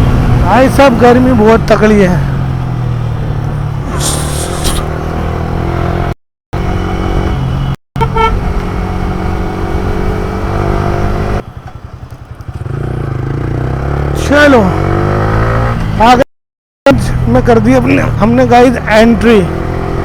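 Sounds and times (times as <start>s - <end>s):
horn beep: 7.5s - 8.4s.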